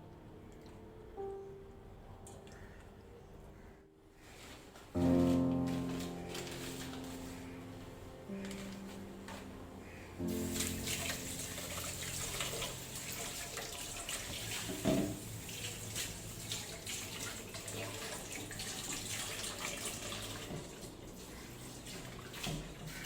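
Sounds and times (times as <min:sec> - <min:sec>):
tap water running into sink: 0:10.2 - 0:23.0.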